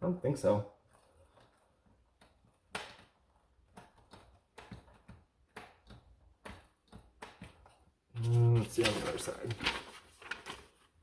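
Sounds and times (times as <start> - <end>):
hard plastic clicks and taps: 2.2 - 7.9.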